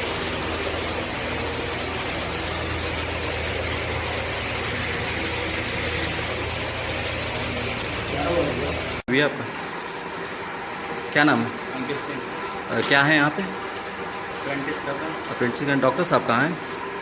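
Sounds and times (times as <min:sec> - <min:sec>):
machine whirring: 0:00.0 - 0:09.0.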